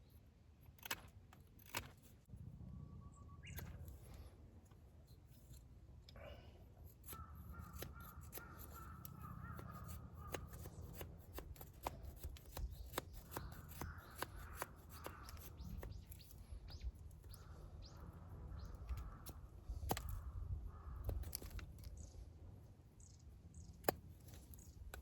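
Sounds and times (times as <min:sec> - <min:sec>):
harsh bird calls: 0:07.0 - 0:11.0, 0:12.8 - 0:22.2.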